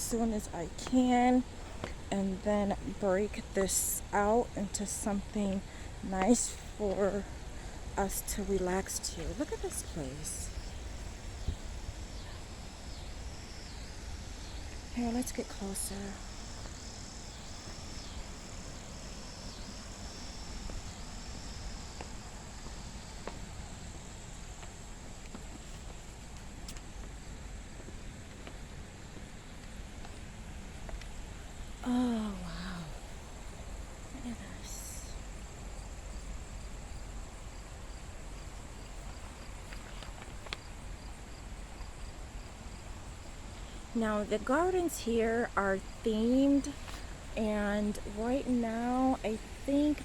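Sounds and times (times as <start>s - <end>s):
insects chorus: 0.0s - 50.0s
low outdoor rumble: 0.0s - 50.0s
pulsed insect call: 0.0s - 50.0s.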